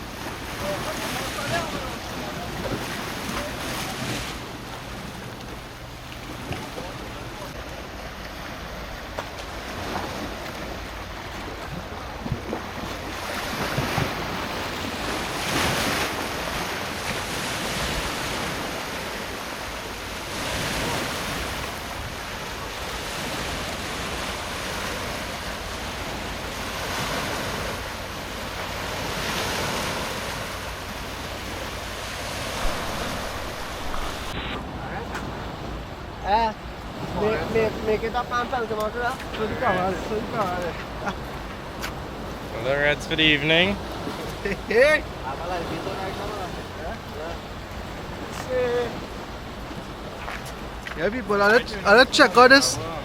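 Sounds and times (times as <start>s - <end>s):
sea waves washing in: 0.0s - 53.0s
wind on microphone: 32.2s - 36.0s.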